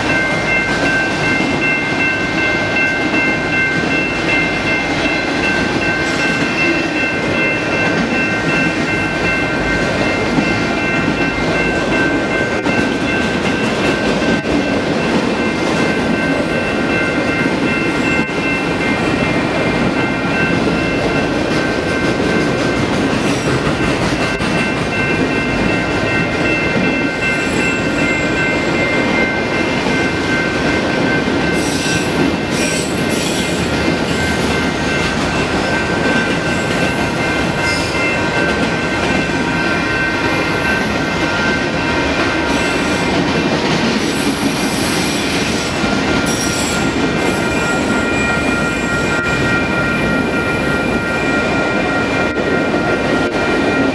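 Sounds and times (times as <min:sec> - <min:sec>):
railcars rumbling past: 0:00.0 - 0:53.9
train wheels squealing: 0:05.8 - 0:10.9, 0:26.5 - 0:43.2, 0:43.8 - 0:53.9.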